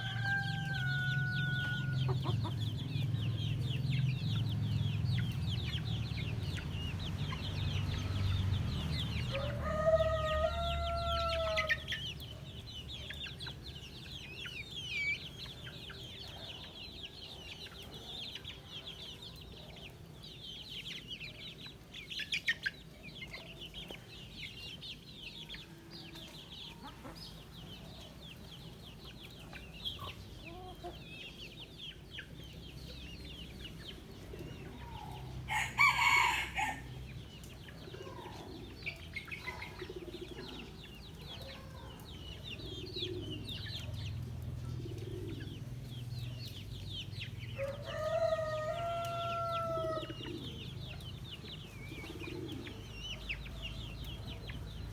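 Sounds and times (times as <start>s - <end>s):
rooster crowing: 0.0s - 2.2s, 9.3s - 11.9s, 35.5s - 36.9s, 47.6s - 50.2s
chicks peeping: 0.0s - 54.9s.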